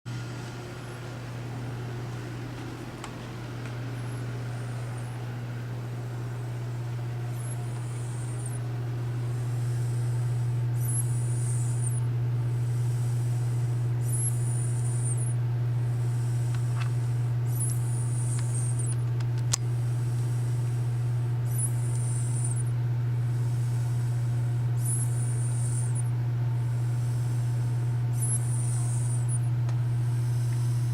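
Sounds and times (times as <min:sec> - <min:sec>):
steady low hum: 0:00.1 - 0:30.9
man snoring: 0:05.9 - 0:12.0, 0:30.1 - 0:30.9.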